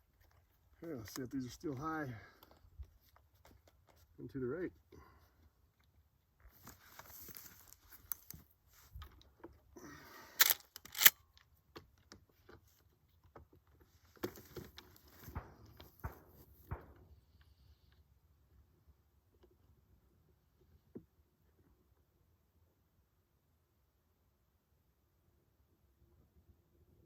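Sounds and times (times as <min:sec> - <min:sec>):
light clicks and rustling: 0:00.0 - 0:04.1, 0:05.8 - 0:09.6
rifle handling noise: 0:06.6 - 0:09.2, 0:10.2 - 0:11.5
rifle lever metallic clacks: 0:10.4 - 0:11.2.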